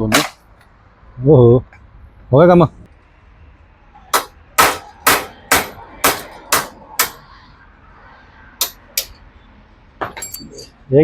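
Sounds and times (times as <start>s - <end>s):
hammer striking metal: 4.1s - 7.3s, 8.6s - 9.2s.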